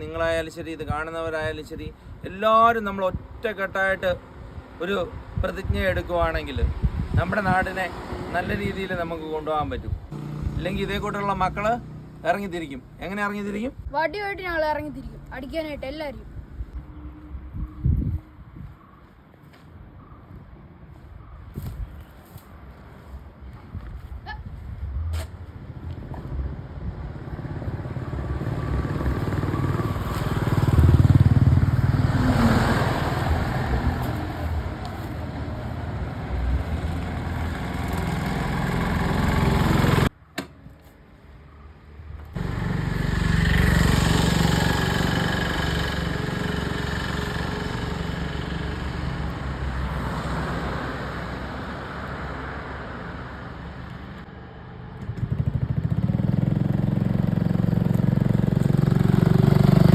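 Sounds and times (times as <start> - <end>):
motor vehicle engine running: 10.1 - 12.3, 25.8 - 40.1, 42.4 - 50.2, 54.9 - 59.9.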